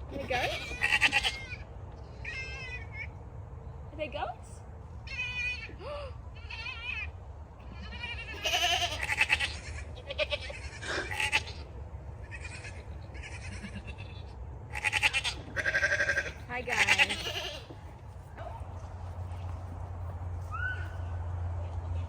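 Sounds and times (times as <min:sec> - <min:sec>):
goats bleating: 0:00.2 - 0:01.6, 0:06.4 - 0:17.9.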